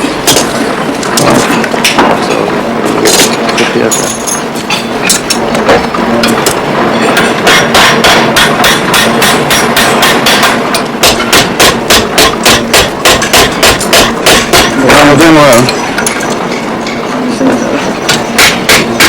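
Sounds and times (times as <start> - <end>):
hammering on metal: 4.7 - 17.0, 18.0 - 19.0.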